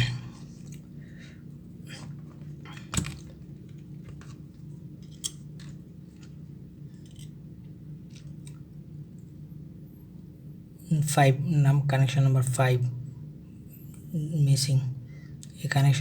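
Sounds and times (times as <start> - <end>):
steady low hum: 0.0 - 16.0
small tools clicking and tapping: 7.0 - 7.4.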